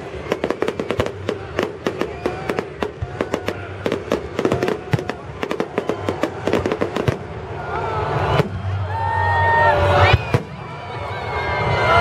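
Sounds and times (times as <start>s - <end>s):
firecracker bangs: 0.0s - 7.6s.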